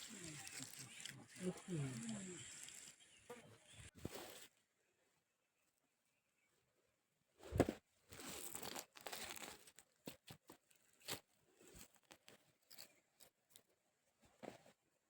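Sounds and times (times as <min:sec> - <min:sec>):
soil and plants rustling: 0:00.0 - 0:04.6, 0:07.5 - 0:13.7.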